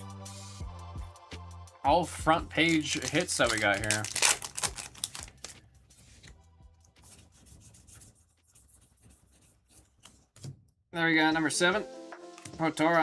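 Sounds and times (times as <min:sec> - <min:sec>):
trading cards sliding and rustling: 0:02.6 - 0:06.4.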